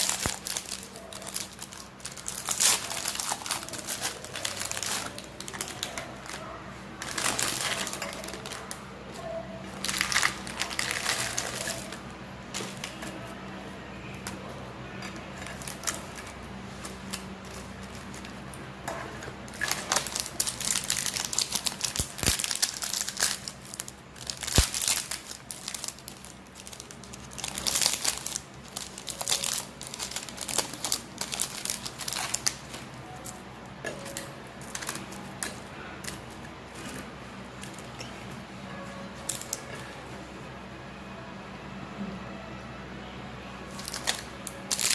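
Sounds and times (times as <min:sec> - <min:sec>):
plastic wrapper crinkling: 0:00.0 - 0:08.8, 0:09.7 - 0:13.3, 0:15.0 - 0:18.6, 0:19.5 - 0:36.2, 0:39.2 - 0:39.8, 0:43.7 - 0:44.9.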